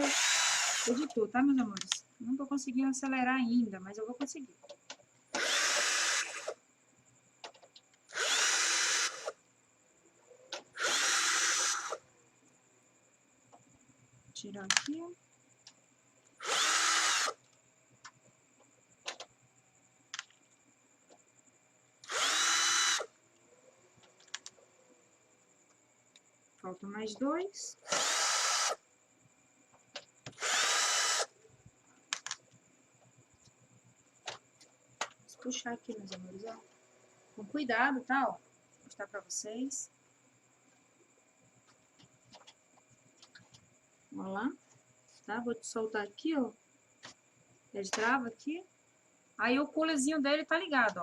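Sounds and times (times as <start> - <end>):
power screwdriver running: 0.0 - 1.1, 5.4 - 6.6, 8.1 - 9.4, 10.8 - 12.0, 16.4 - 17.4, 22.0 - 23.1, 27.9 - 28.8, 30.3 - 31.3
small clicks: 1.0 - 2.0, 14.6 - 15.0, 20.1 - 21.2, 24.0 - 24.6, 32.1 - 32.6.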